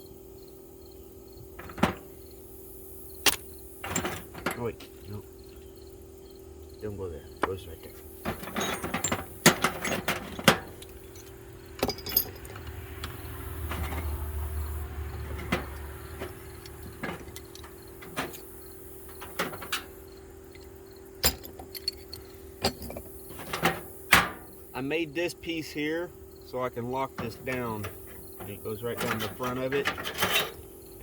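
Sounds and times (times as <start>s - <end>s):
steady low hum: 0.0s - 31.0s
metal tools clinking in toolbox: 3.3s - 5.0s, 8.2s - 14.2s, 15.2s - 24.4s, 27.1s - 31.0s.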